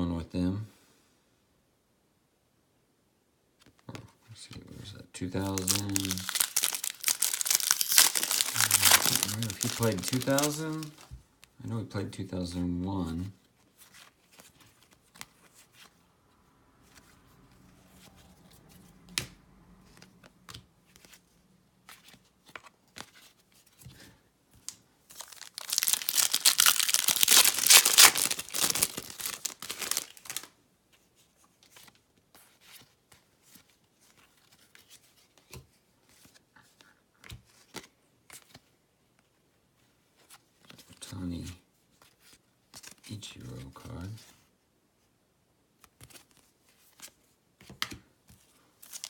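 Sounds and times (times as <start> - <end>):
card pack wrapper tearing: 5.4 - 11.1, 25.1 - 30.5.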